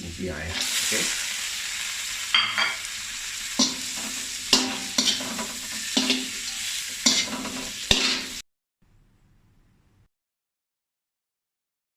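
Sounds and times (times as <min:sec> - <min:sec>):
chicken sizzling in butter: 0:00.0 - 0:08.4
spatula knocking on metal pan: 0:03.6 - 0:06.5, 0:07.1 - 0:08.4.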